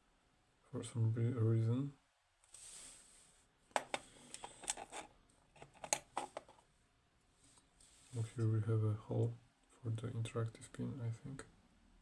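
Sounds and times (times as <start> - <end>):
soft hiss: 0.0 - 5.4, 6.2 - 12.0
small metal lock parts clicking: 4.3 - 6.4.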